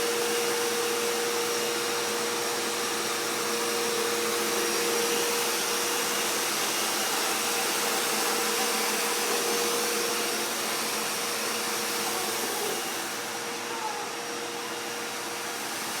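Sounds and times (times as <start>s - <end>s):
vacuum cleaner running: 0.0s - 16.0s.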